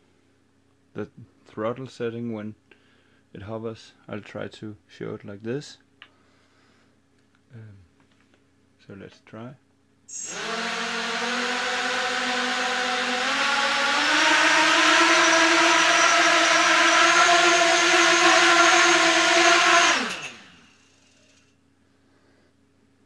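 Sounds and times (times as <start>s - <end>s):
drone propeller whine: 10.2s - 20.7s.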